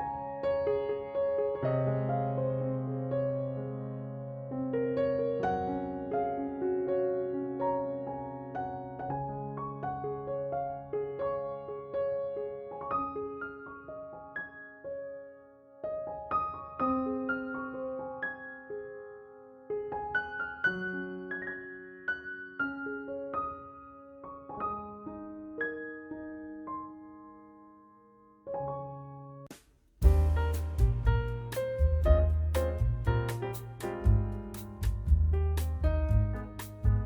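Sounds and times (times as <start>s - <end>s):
slow gentle piano music: 0.0s - 37.0s
crisp percussion beat: 29.5s - 37.0s
bass line: 30.0s - 37.0s.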